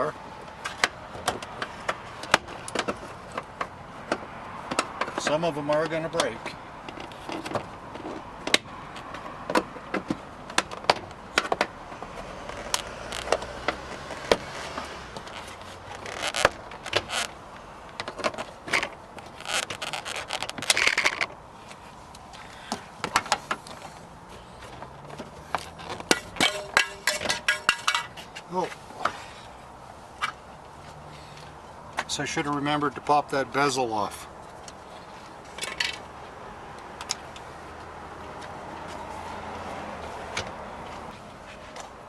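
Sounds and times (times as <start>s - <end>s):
plastic scraping: 12.4s - 17.4s, 18.0s - 21.4s.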